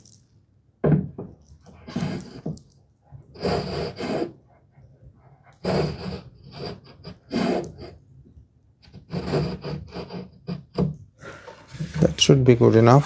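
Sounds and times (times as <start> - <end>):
marking gauge rasping on wood: 3.3 - 4.4, 5.6 - 8.0, 8.9 - 13.0.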